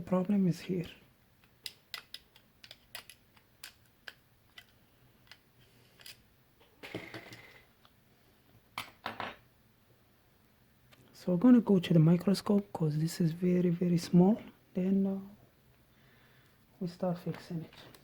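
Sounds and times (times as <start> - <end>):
small objects clicking: 1.4 - 6.2.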